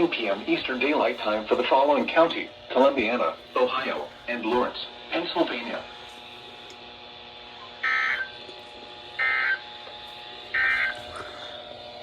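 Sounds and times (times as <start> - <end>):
electronic data squawks: 7.6 - 8.4, 9.2 - 9.7, 10.5 - 11.5.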